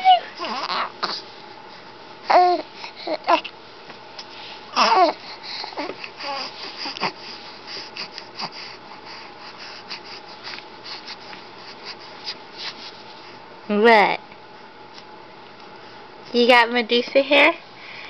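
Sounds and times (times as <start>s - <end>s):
baby vocalizing: 0.0s - 1.2s, 4.8s - 7.3s
faint breathy noises: 4.2s - 12.4s.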